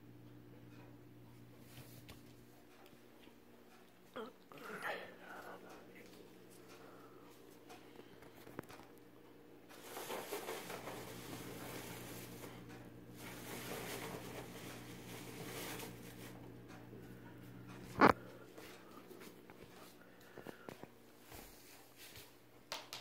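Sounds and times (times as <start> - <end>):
steady low hum: 0.0 - 22.6
cat rustling and scuffling: 9.7 - 16.5, 21.2 - 22.4.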